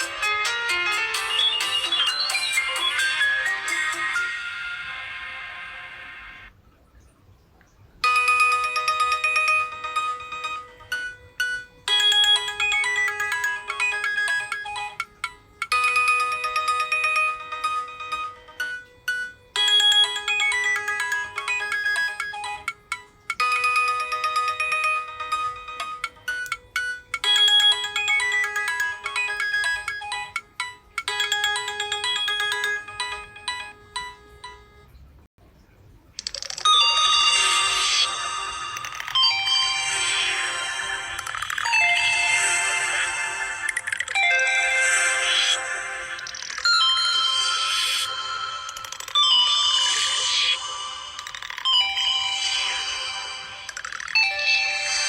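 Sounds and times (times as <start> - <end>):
mobile phone ringtone melody: 0.0 - 4.9, 8.0 - 34.9, 36.4 - 55.0.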